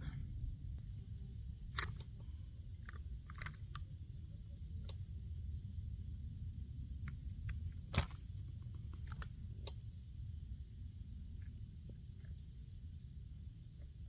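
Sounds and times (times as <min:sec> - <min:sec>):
low rumble: 0:00.0 - 0:14.0.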